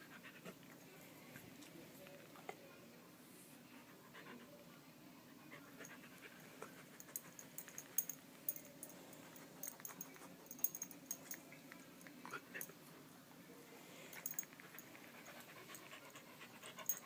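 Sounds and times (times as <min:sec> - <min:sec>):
dog panting softly: 0:00.0 - 0:01.6, 0:03.7 - 0:12.8, 0:14.0 - 0:17.0.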